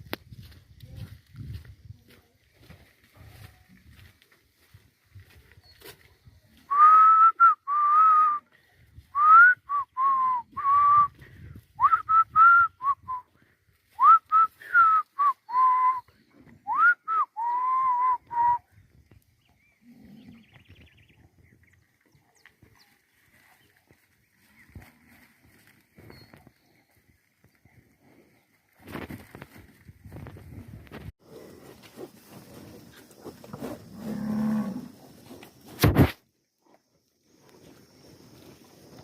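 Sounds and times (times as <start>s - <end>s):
person whistling calls: 6.6s - 8.5s, 9.1s - 11.2s, 11.8s - 13.3s, 14.0s - 18.7s.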